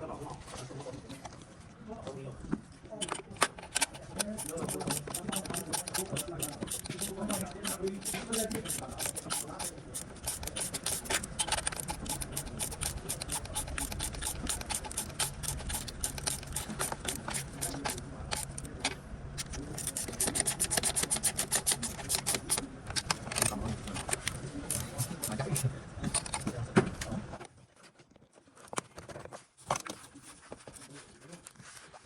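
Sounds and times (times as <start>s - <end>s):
low steady hum: 0.0s - 27.4s
rapid sharp clicking: 3.5s - 26.5s.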